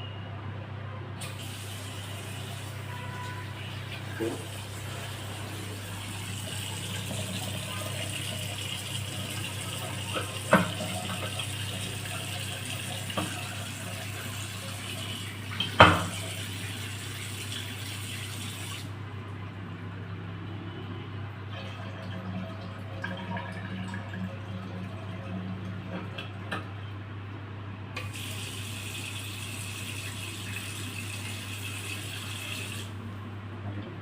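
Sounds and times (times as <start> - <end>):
water running from tap: 1.2 - 19.0, 28.0 - 33.0.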